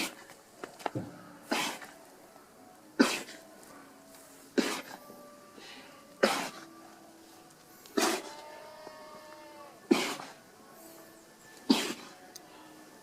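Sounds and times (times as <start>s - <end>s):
alpaca sneezing: 1.4s - 2.0s, 3.0s - 3.4s, 4.5s - 5.0s, 5.6s - 6.7s, 8.0s - 8.4s, 9.8s - 10.4s, 11.6s - 12.2s.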